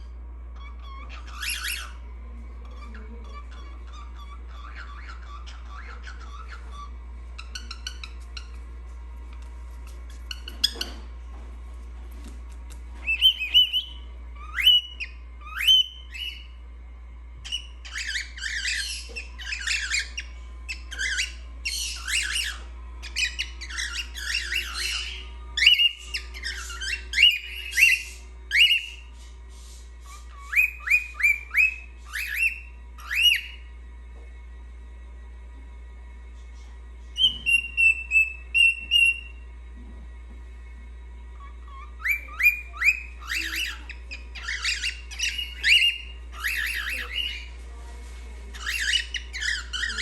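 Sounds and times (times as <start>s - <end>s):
cockatiel whistling and chattering: 0.5s - 2.0s, 2.6s - 8.7s, 9.8s - 11.1s, 13.0s - 16.6s, 17.4s - 33.7s, 37.2s - 39.4s, 41.4s - 47.6s, 48.5s - 50.0s.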